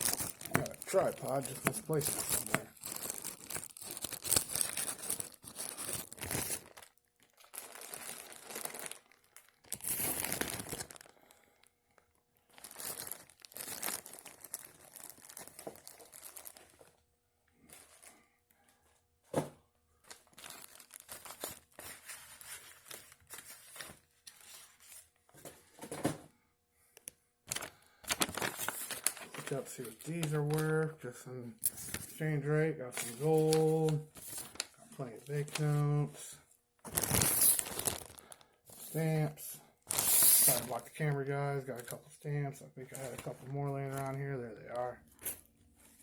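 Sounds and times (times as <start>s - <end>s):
paper and plastic crinkling: 0.0s - 11.7s, 12.5s - 17.0s, 17.6s - 18.2s, 20.0s - 26.1s, 27.5s - 31.0s, 31.6s - 36.3s, 36.9s - 46.0s.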